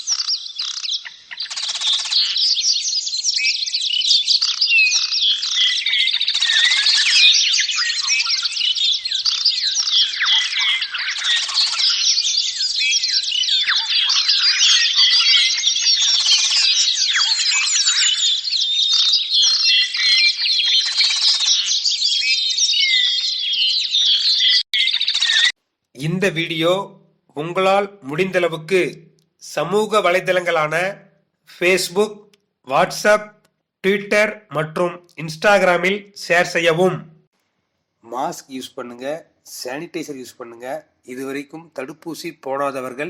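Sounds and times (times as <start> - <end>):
parrots chattering and chirping: 0.0 - 25.6.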